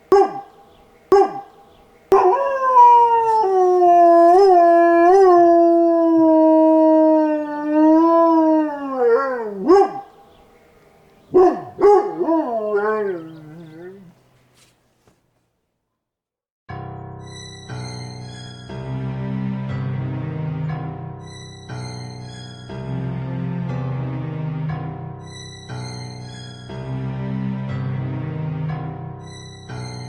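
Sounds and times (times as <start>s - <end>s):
small dog howling: 2.1s - 10.1s, 11.3s - 14.2s.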